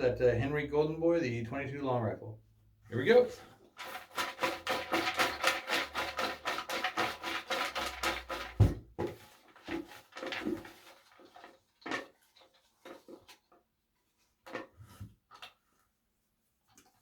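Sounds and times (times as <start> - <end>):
ticket drum clattering: 3.8 - 8.7
thump: 8.5 - 9.2.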